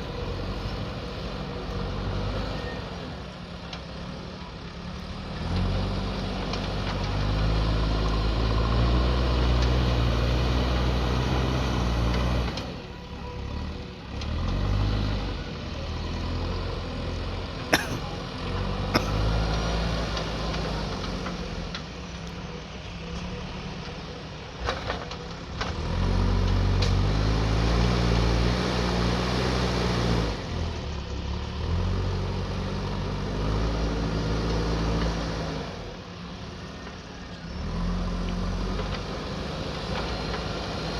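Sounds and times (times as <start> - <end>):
diesel engine revving under load: 0.0 - 40.9.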